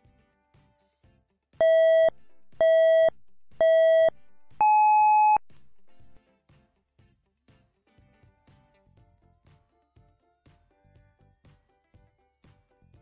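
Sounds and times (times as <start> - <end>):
electronic countdown beeps: 1.6 - 5.4
faint background music: 5.9 - 13.0.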